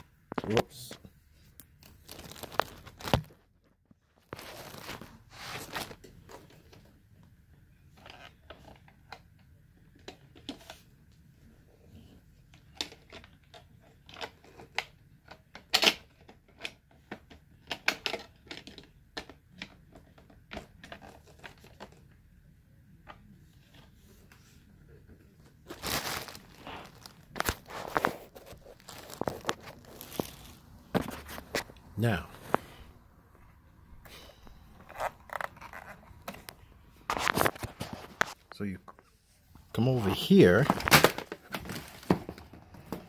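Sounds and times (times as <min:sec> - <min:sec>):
plastic rustling: 0:01.7 - 0:06.8, 0:25.3 - 0:32.6, 0:40.0 - 0:43.0
plastic parts clicking and knocking: 0:07.9 - 0:10.8, 0:12.5 - 0:22.2.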